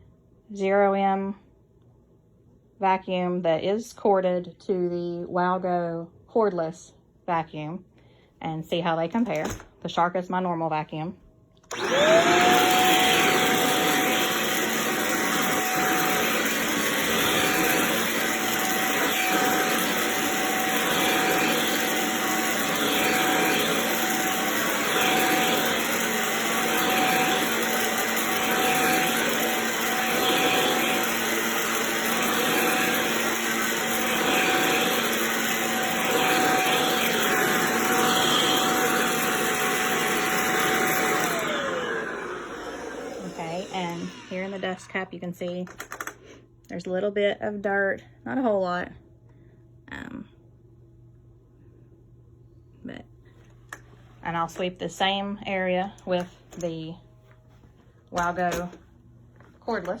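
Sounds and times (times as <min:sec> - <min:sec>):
vacuum cleaner motor whine: 0:11.7 - 0:45.2.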